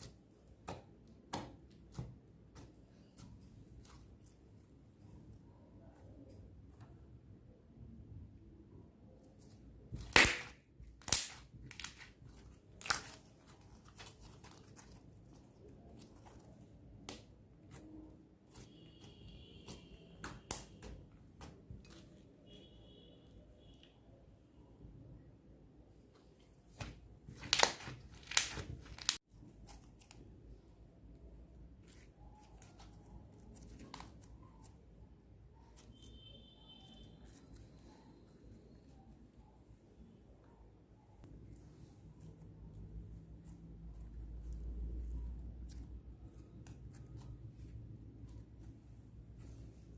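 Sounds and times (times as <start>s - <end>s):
slime popping: 9.9s - 15.0s, 26.8s - 29.2s
slime crackling and tearing: 9.9s - 22.0s, 27.3s - 30.4s.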